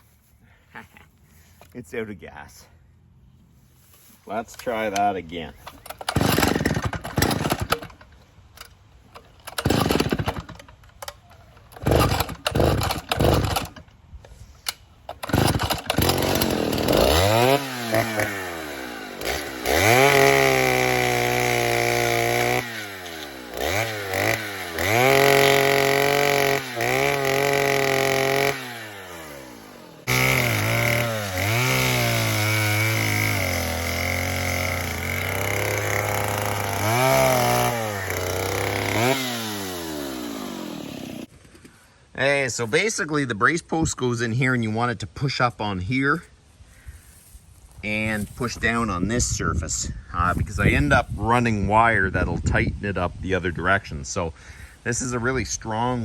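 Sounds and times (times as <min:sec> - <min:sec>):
chainsaw starting and revving: 0:04.5 - 0:13.9, 0:15.1 - 0:41.4
chainsaw cutting wood: 0:04.6 - 0:13.9, 0:14.7 - 0:41.4.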